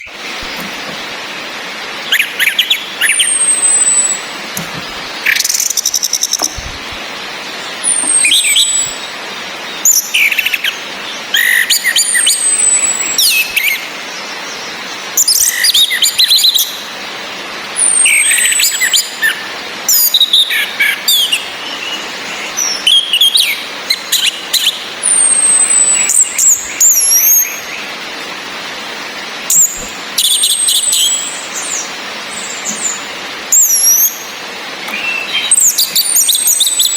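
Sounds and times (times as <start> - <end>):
bird song: 0.0 - 28.3, 29.5 - 36.9
rain hiss: 0.0 - 36.9
thrush whistle call: 2.1 - 6.6, 29.5 - 31.4.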